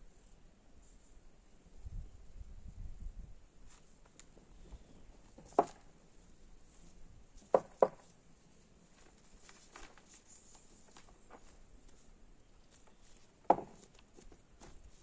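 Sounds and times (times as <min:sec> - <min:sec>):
faint small clicks and rustles: 0:03.6 - 0:05.6, 0:06.6 - 0:15.0
sharp knocks: 0:07.4 - 0:08.0, 0:13.5 - 0:13.8.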